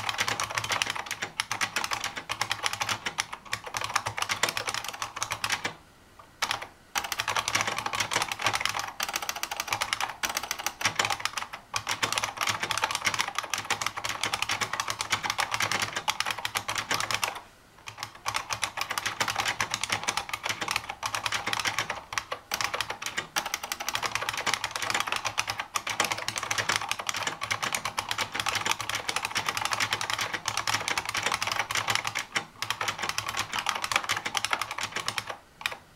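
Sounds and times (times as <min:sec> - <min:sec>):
fast keyboard typing clicks: 0:00.0 - 0:05.8, 0:06.4 - 0:35.8.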